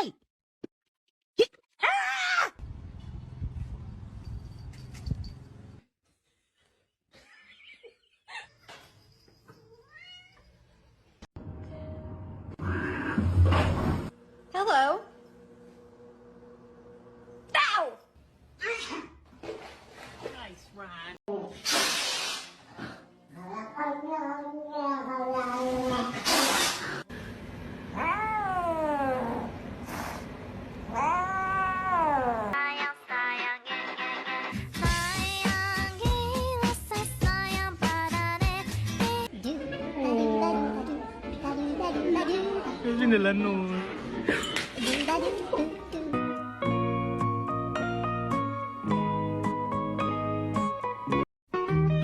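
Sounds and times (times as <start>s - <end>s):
cat meowing: 9.8s - 10.5s.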